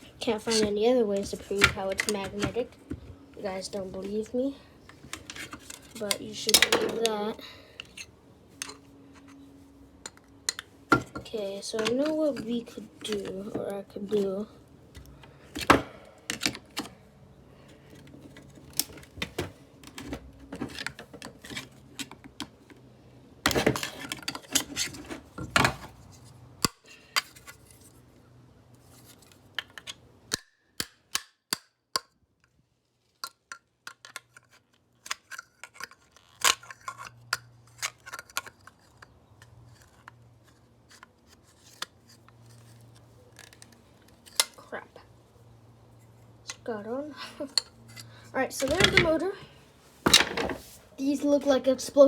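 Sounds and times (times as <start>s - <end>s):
plastic and metal parts clattering: 4.9s - 7.2s, 17.9s - 22.8s, 23.4s - 26.2s, 33.2s - 42.0s.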